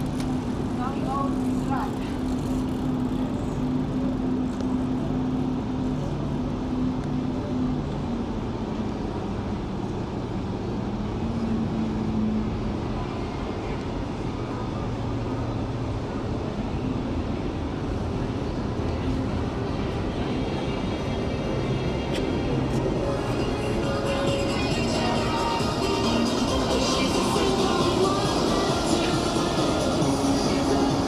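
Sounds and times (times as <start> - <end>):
city traffic rumble: 0.0 - 31.0.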